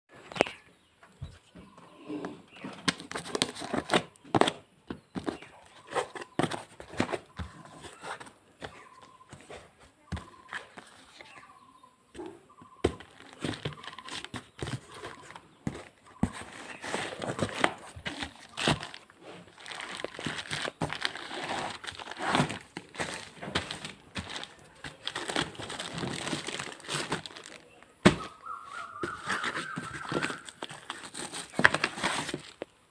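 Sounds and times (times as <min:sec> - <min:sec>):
packaging crinkling and rustling: 0:02.8 - 0:04.6, 0:12.9 - 0:32.7.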